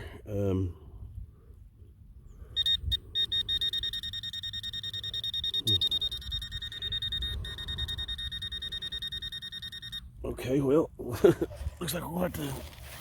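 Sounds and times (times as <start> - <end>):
metal detector pulsing beeps: 2.6 - 10.2.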